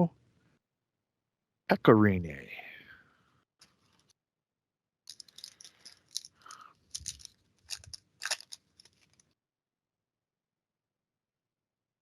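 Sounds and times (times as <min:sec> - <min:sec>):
trading cards rustling and clicking: 0:05.1 - 0:09.3.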